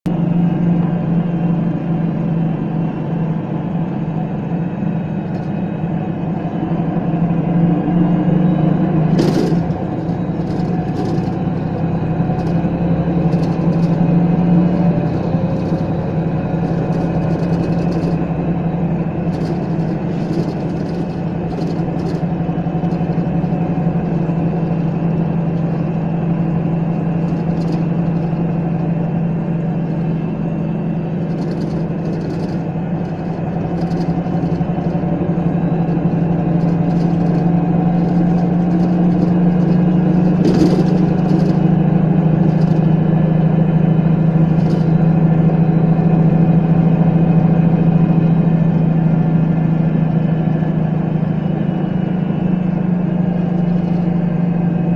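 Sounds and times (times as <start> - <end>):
bus engine droning: 0.0 - 54.9
light rattles: 9.0 - 46.7
sharp clack: 9.1 - 14.1.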